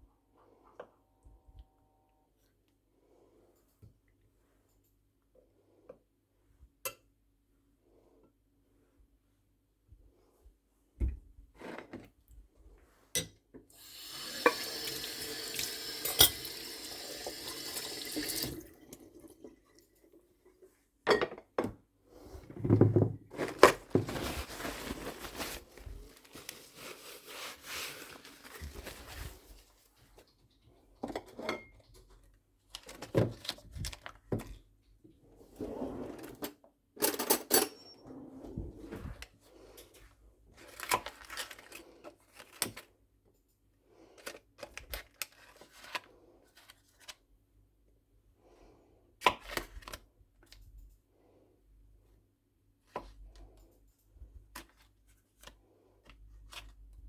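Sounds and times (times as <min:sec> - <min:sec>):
tap water running into sink: 0:13.8 - 0:19.5
knocks and clatter of handling: 0:21.1 - 0:26.9.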